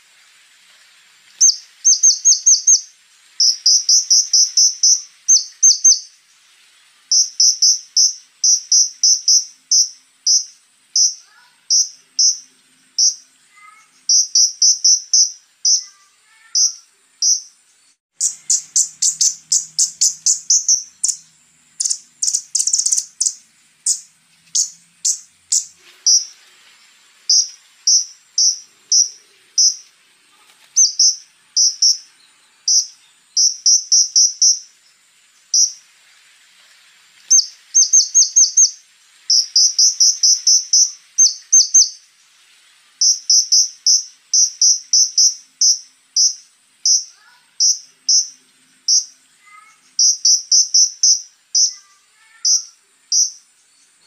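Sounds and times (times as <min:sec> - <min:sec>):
bird calling sharp high notes: 0:18.2 - 0:26.4.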